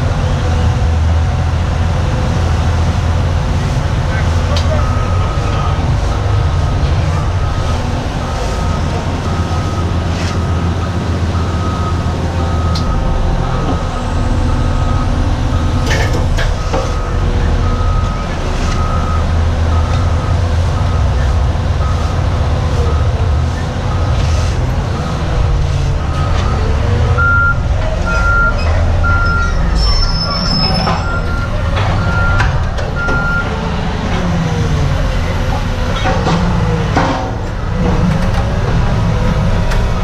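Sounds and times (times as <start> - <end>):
heavy diesel machinery running: 0.0 - 40.0
backup alarm beeping: 26.0 - 33.5.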